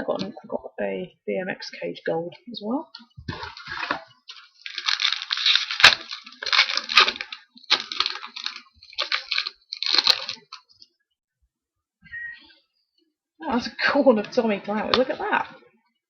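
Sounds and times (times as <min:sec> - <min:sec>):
card pack wrapper tearing and crinkling: 0:03.3 - 0:10.7.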